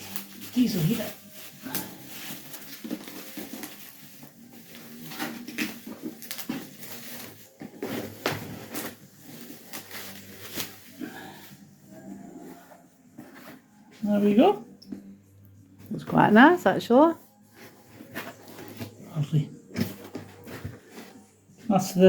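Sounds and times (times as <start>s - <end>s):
packaging rustling: 0.0s - 12.1s.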